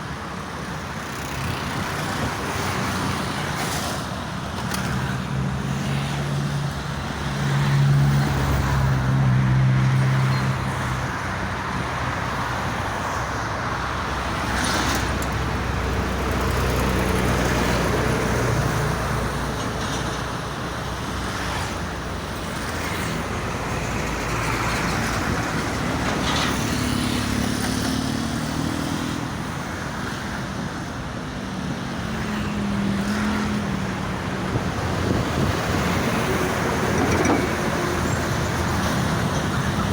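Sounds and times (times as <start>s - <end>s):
traffic noise: 0.0s - 39.9s
heavy vehicle engine drone: 28.1s - 39.9s.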